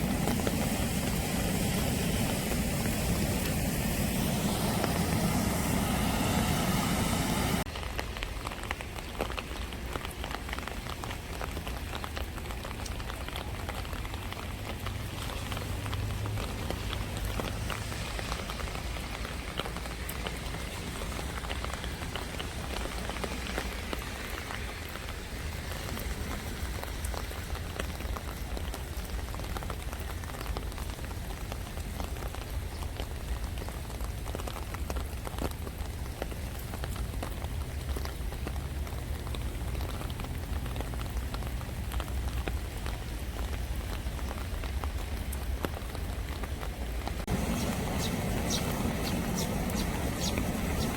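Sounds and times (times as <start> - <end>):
low steady rumble: 0.0 - 7.7, 47.3 - 50.9
rain falling: 0.0 - 50.9.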